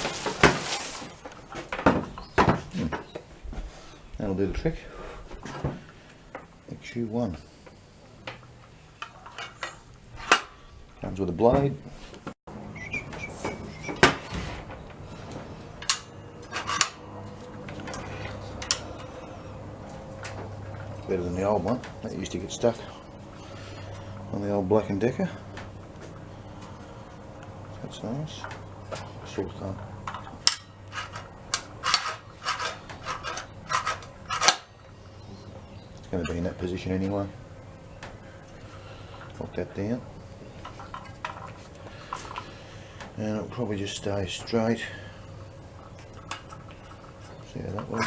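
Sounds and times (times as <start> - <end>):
steady low hum: 0.0 - 48.0
metal parts clicking and scraping: 15.8 - 19.2, 30.0 - 34.7.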